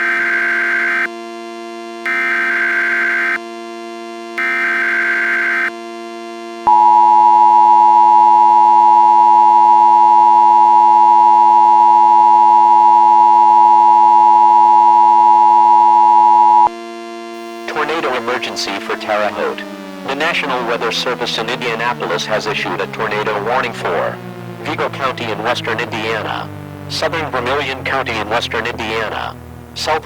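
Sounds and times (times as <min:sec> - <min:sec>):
synthesizer drone: 0:16.8 - 0:30.0
data header bursts: 0:17.4 - 0:30.0
steady attention tone: 0:17.4 - 0:30.0.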